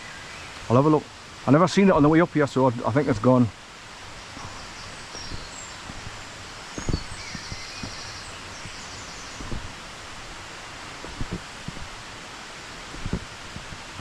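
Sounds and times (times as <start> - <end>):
small birds chirping: 0.0 - 3.4, 4.0 - 14.0
outdoor background rush: 0.0 - 14.0
footsteps on outdoor steps: 4.0 - 14.0.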